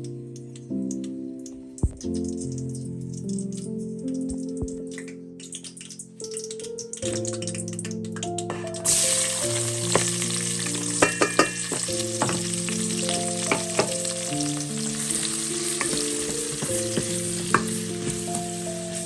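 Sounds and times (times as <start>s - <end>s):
utensil clicking in a pan: 2.0s - 8.9s, 9.5s - 18.7s
food sizzling in a pan: 8.3s - 19.0s.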